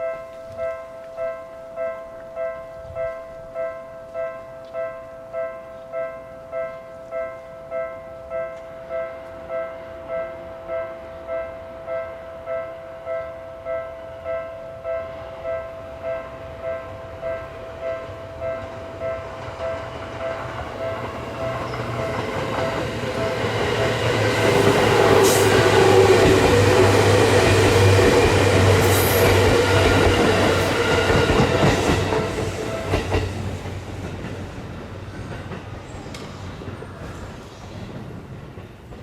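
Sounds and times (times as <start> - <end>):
wheels clacking on rails: 17.2 - 39.0
train rumble and motor hum: 18.4 - 39.0.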